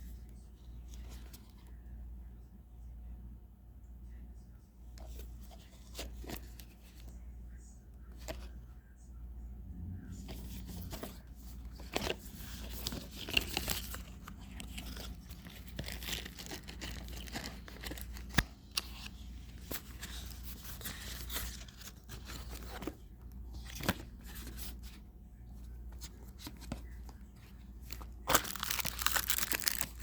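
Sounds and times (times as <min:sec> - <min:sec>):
packaging rustling and tearing: 0:10.6 - 0:23.0, 0:27.8 - 0:30.0.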